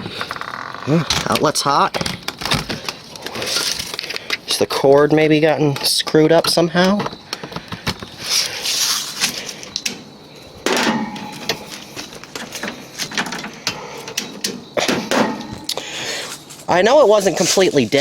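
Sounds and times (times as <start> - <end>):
hands handling air conditioner: 10.7 - 18.0.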